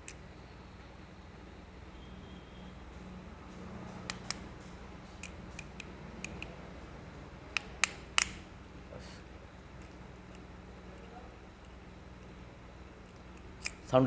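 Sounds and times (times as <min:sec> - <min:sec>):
metallic clicks of tools: 0:05.2 - 0:06.6, 0:13.0 - 0:13.9.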